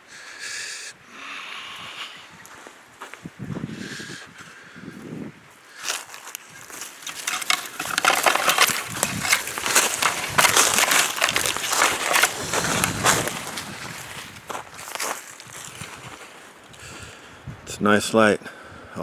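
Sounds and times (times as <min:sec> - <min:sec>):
crunching and crackling: 0:05.8 - 0:16.8.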